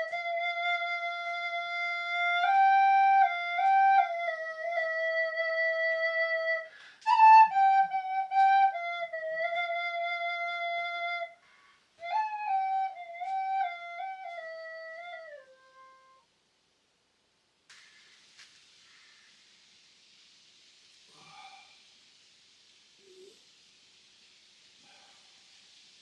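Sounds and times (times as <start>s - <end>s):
solo flute melody: 0.0s - 16.4s.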